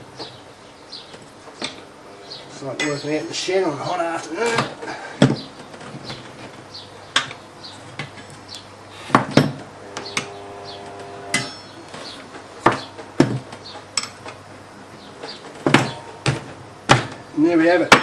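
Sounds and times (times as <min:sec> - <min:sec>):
short metallic ringing: 0:11.3 - 0:11.9.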